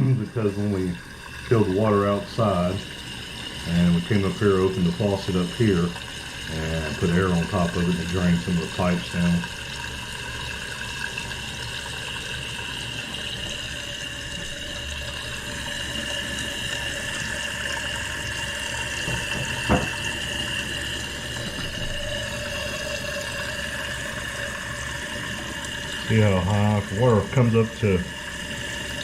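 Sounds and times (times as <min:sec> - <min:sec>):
toilet tank refilling with whistle: 0:00.0 - 0:29.0
short knock: 0:19.1 - 0:20.0.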